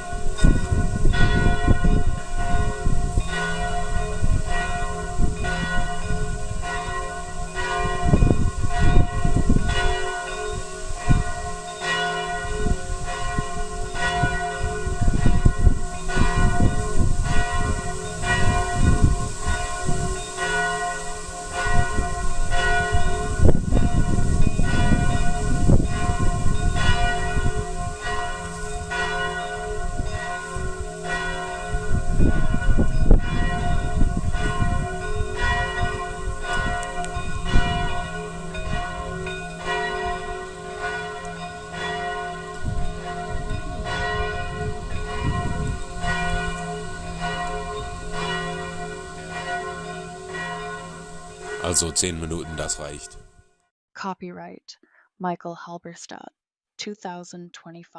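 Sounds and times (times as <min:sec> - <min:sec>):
church bells pealing: 0:00.0 - 0:53.2.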